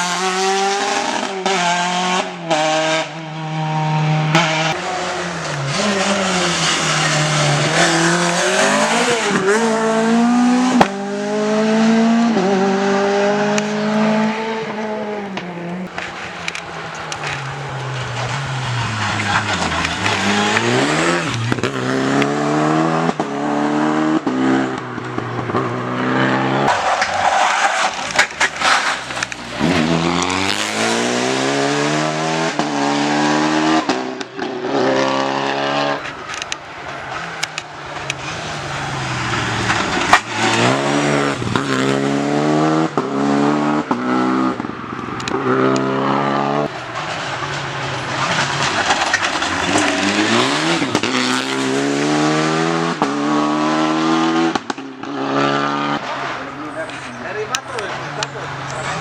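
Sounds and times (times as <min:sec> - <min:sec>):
rally car engine at full throttle: 0:00.0 - 0:59.0
sharp cracks: 0:15.4 - 0:22.3, 0:26.7 - 0:31.9.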